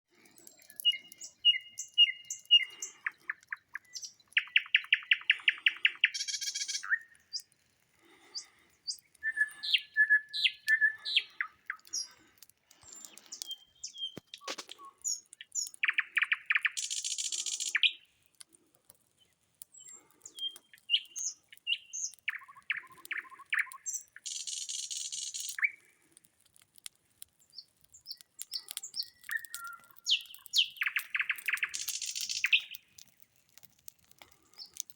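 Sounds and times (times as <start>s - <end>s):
nightingale singing: 0.4s - 7.5s, 8.3s - 12.1s, 12.8s - 18.1s, 19.7s - 25.8s, 27.5s - 32.8s.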